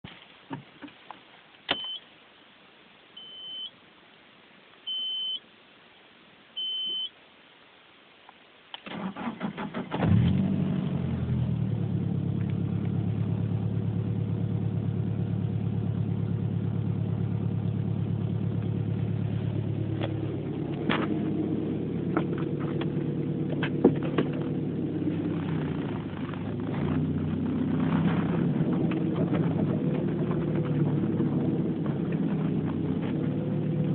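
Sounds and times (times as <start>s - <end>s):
short electronic beeps: 3.2s - 3.7s, 4.9s - 5.4s, 6.6s - 7.1s
car starter cranking: 8.8s - 10.6s
car engine idling: 8.9s - 33.9s.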